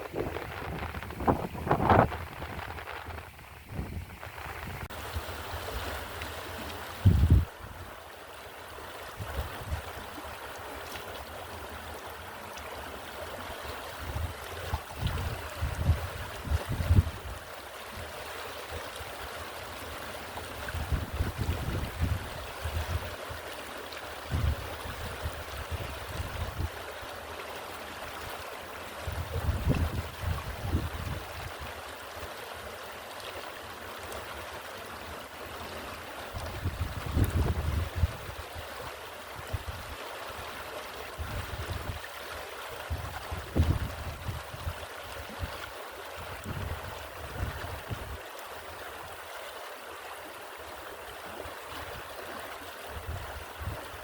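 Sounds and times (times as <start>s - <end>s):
wind buffeting microphone: 0.0s - 5.0s, 7.0s - 7.8s, 14.0s - 17.4s, 20.7s - 23.2s, 24.3s - 26.8s, 29.1s - 31.7s, 36.4s - 38.4s, 41.2s - 42.1s, 42.9s - 48.2s
stream flowing: 0.0s - 54.0s.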